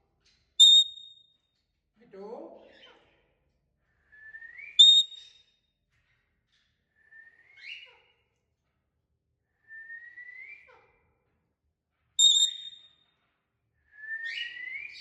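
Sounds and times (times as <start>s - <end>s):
parrot whistling: 4.8s - 5.2s, 12.2s - 12.8s.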